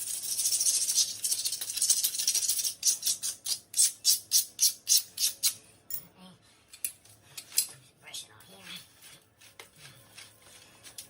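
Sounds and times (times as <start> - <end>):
razor blade scraping caulking: 0.0 - 5.6.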